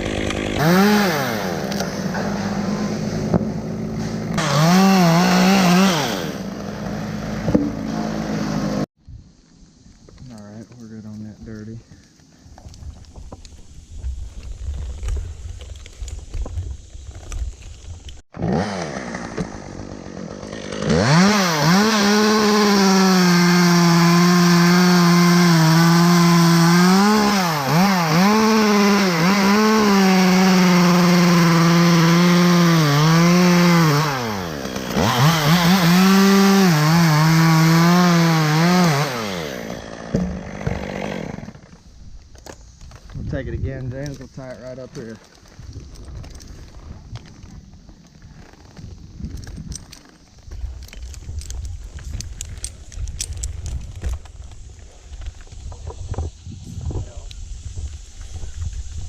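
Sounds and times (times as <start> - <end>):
chainsaw cutting wood: 0.0 - 8.9, 18.3 - 41.8.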